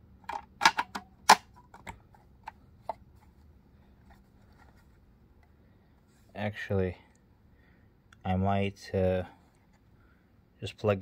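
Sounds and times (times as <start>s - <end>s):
clicks of plastic and metal parts: 0.2s - 3.0s.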